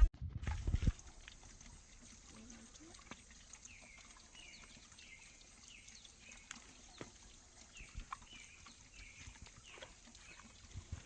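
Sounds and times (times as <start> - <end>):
cow chewing apple: 6.6 - 11.0.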